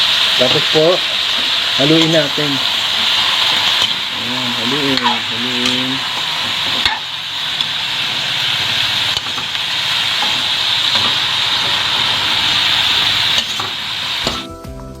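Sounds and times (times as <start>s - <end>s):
vegetables sizzling in a pan: 0.0s - 14.5s
utensil clicking against pan: 3.4s - 4.0s, 4.9s - 7.8s, 9.1s - 9.6s.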